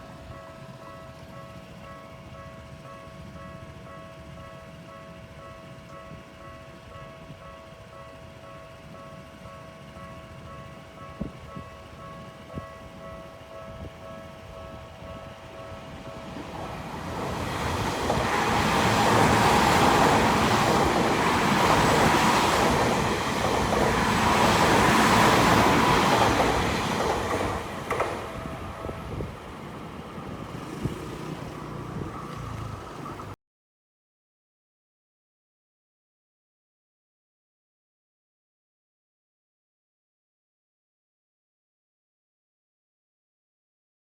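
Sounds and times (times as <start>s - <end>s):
electric train passing: 0.0s - 33.4s
level crossing warning bell: 0.0s - 33.4s.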